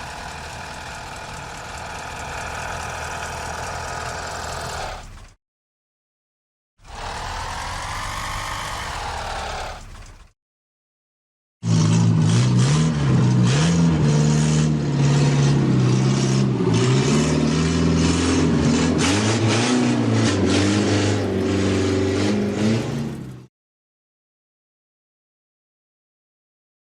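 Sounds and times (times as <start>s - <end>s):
small car engine revving: 0.0s - 5.4s, 6.8s - 10.4s, 11.6s - 23.5s.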